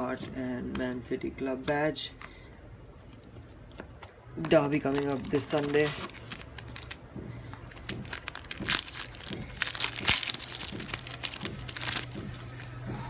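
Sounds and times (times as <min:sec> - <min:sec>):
wrapper crinkling and tearing: 0:04.4 - 0:07.0, 0:07.6 - 0:12.9.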